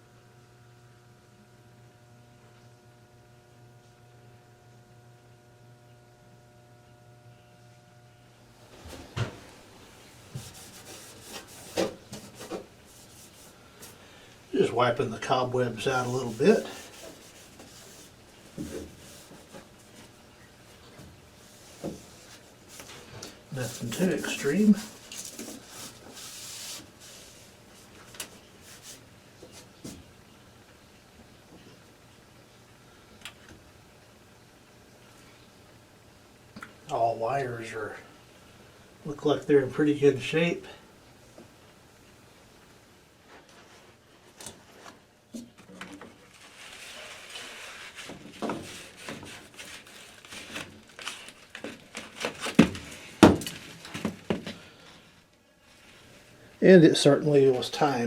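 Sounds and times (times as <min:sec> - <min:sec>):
rubbing inside furnace cabinet: 0:10.3 - 0:14.1, 0:15.6 - 0:20.1, 0:21.4 - 0:28.0, 0:46.2 - 0:50.8
cardboard and sheet metal scraping: 0:21.5 - 0:27.4, 0:45.9 - 0:54.2.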